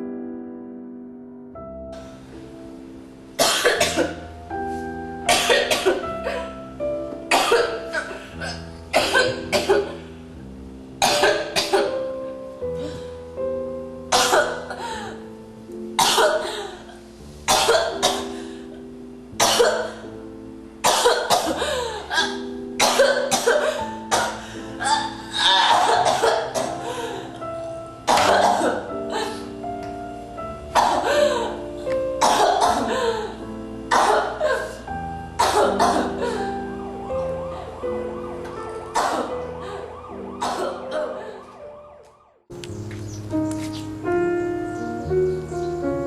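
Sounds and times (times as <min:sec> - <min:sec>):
slow piano music: 0:00.0 - 0:46.0
person coughing hard: 0:03.4 - 0:04.2, 0:05.3 - 0:06.5, 0:07.3 - 0:10.0, 0:11.0 - 0:12.0, 0:14.1 - 0:14.9, 0:16.0 - 0:16.6, 0:17.5 - 0:18.4, 0:19.4 - 0:20.0, 0:20.8 - 0:26.9, 0:28.1 - 0:29.4, 0:30.8 - 0:31.3, 0:32.2 - 0:33.1, 0:33.9 - 0:34.7, 0:35.4 - 0:36.6, 0:39.0 - 0:39.4, 0:40.4 - 0:41.2.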